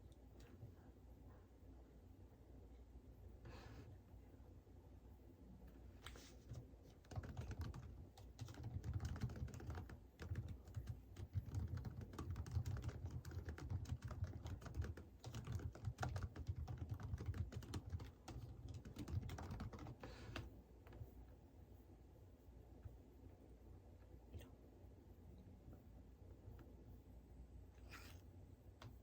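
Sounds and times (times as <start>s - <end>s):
typing on computer keyboard: 6.5s - 20.5s.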